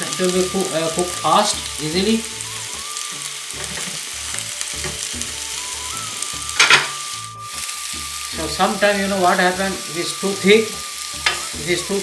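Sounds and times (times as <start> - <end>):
food sizzling in oil: 0.0 - 12.0.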